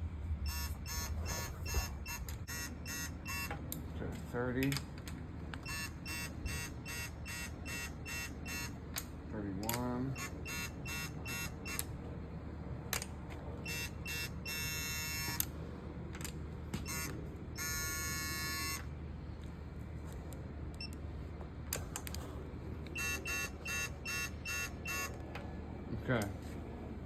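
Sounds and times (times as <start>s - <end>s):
digital torque wrench beeping: 0.5s - 3.6s, 5.6s - 8.8s, 10.0s - 11.8s, 13.6s - 15.4s, 16.8s - 18.8s, 23.0s - 25.2s.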